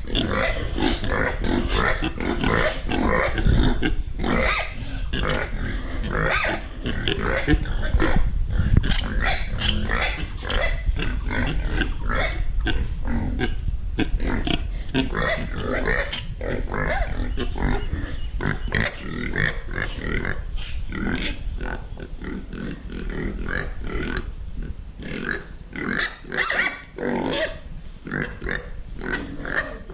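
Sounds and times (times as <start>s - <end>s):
steady low rumble: 0.0s - 25.8s
pigs grunting and calling: 0.0s - 29.9s.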